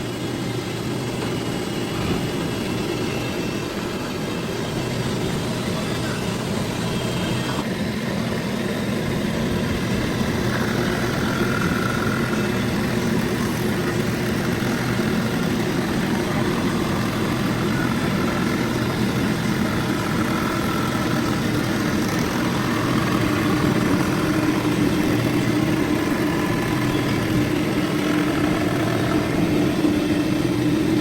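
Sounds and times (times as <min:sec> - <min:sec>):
car engine idling: 0:09.6 - 0:31.0.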